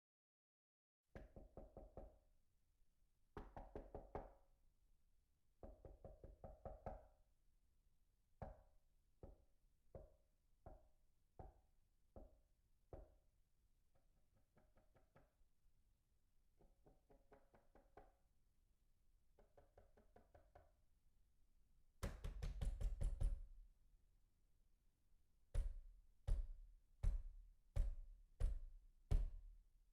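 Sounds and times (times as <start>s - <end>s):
knocking on a door: 22.0s - 23.6s, 25.6s - 29.5s
loud pounding on a door: 22.0s - 23.6s, 25.6s - 29.6s.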